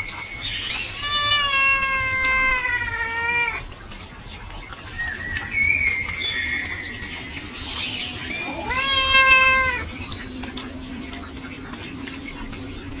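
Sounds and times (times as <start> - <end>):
cat meowing: 0.8 - 3.7, 8.4 - 9.9.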